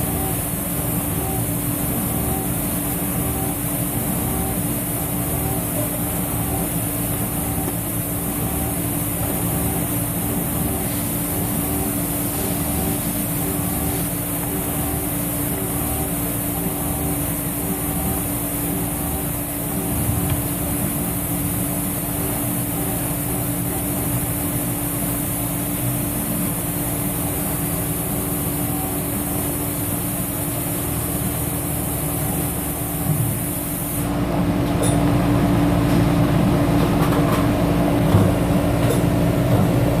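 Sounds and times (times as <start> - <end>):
milling machine cutting steel: 0.0 - 24.4.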